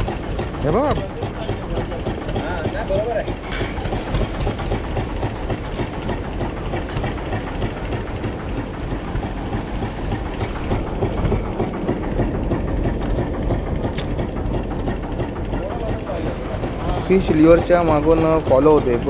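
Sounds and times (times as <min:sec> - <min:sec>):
water noise: 0:00.0 - 0:08.6, 0:16.1 - 0:18.6
boat engine rumbling: 0:00.0 - 0:08.8, 0:14.2 - 0:19.0
wind: 0:00.0 - 0:19.0.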